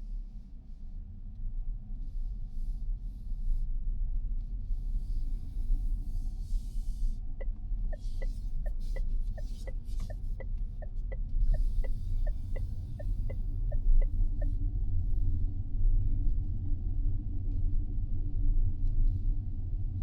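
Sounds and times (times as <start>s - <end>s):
turn signal ticking: 7.4s - 14.5s.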